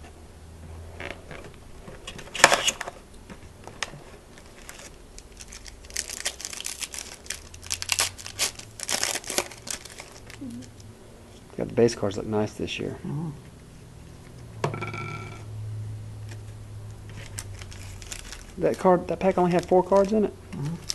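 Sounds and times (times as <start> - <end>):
wrapper crinkling: 4.3 - 10.8, 17.1 - 20.9
wrapper tearing: 4.3 - 10.8, 17.1 - 20.9.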